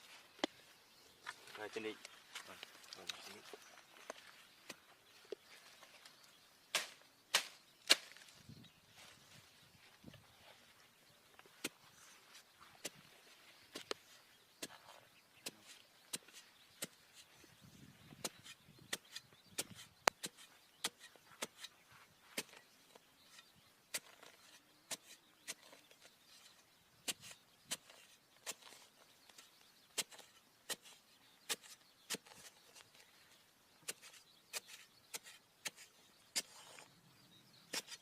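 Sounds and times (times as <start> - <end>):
knife cutting wooden sticks: 18.2 - 21.8.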